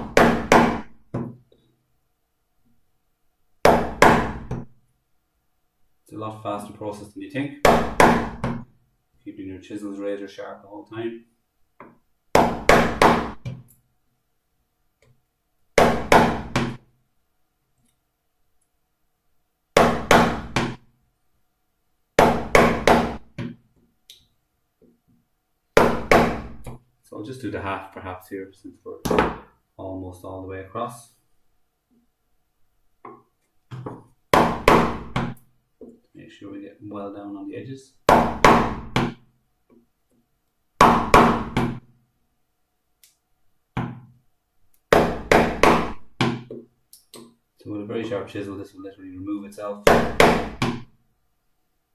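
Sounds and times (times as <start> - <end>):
mallet knocking chisel into wood: 0.0 - 1.4, 3.6 - 4.7, 15.8 - 16.8, 19.8 - 20.8, 22.2 - 23.6, 25.8 - 26.7, 29.0 - 29.5, 33.1 - 35.4, 38.1 - 39.2, 44.9 - 47.3, 49.9 - 50.9.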